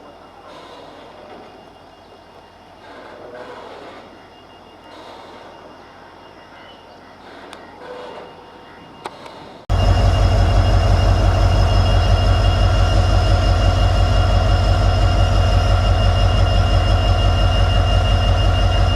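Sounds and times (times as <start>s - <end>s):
faint train squeal: 0.0s - 18.9s
distant train rumble: 9.7s - 18.9s.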